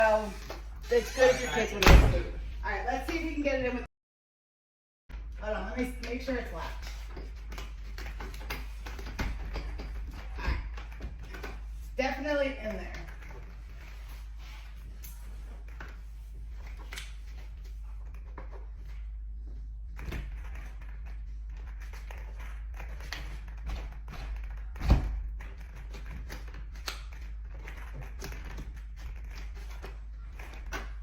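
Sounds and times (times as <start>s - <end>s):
plastic strip tapping and scraping: 20.0s - 31.0s.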